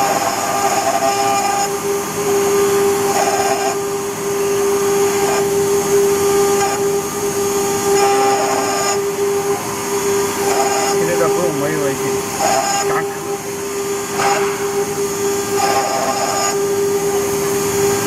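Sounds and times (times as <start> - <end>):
router spindle high whine: 0.0 - 18.0
bit cutting copper: 7.8 - 16.9.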